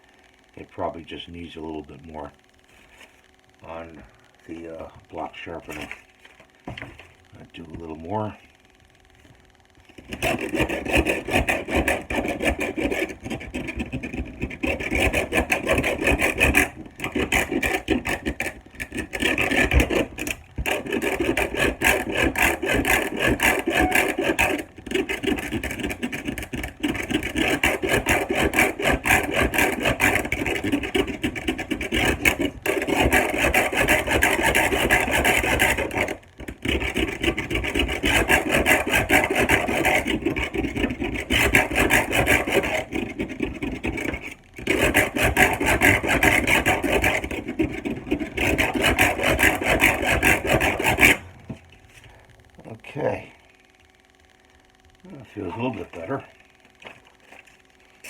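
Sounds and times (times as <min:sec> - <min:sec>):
knife rasping through sharpener: 0:10.1 - 0:51.2.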